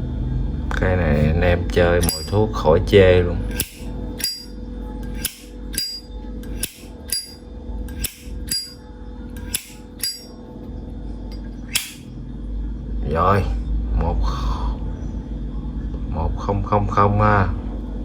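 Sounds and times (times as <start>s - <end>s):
steady low hum: 0.0s - 18.0s
lighter lid clicking open and shut: 3.5s - 8.8s, 9.4s - 10.3s, 11.7s - 12.1s.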